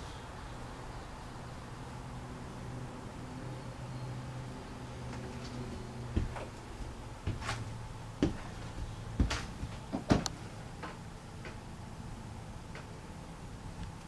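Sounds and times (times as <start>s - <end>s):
low steady hum: 0.0s - 14.0s
sharp knocks and clicks: 7.3s - 11.6s.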